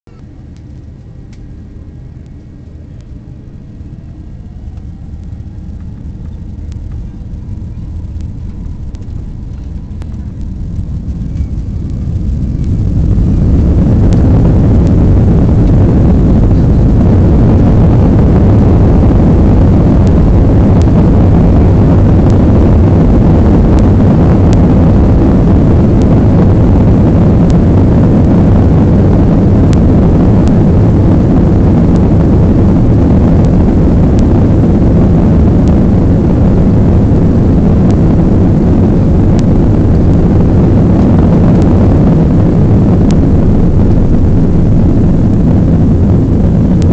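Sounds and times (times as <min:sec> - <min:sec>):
aircraft engines rumbling: 0:00.1 - 0:46.9.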